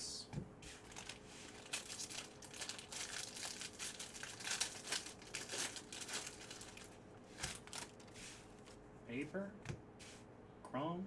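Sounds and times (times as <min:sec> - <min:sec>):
card pack wrapper tearing: 0:00.9 - 0:08.0.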